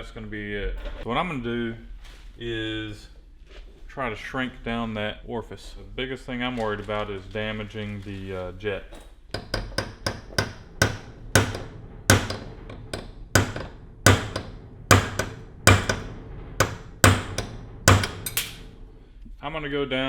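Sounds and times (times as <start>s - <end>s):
hammer tapping metal punch: 9.4s - 18.6s.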